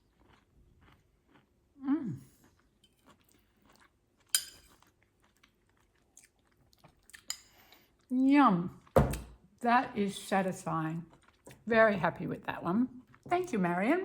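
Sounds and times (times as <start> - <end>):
person chewing food: 0.0 - 8.1, 11.0 - 11.7, 13.0 - 13.3
person humming approval: 1.8 - 2.3.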